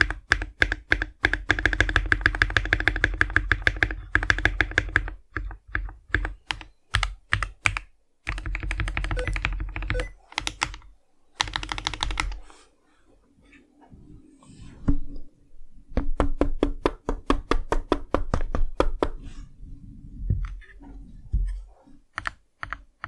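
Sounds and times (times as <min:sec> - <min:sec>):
mechanical keyboard typing: 0:00.0 - 0:12.5, 0:22.1 - 0:23.0.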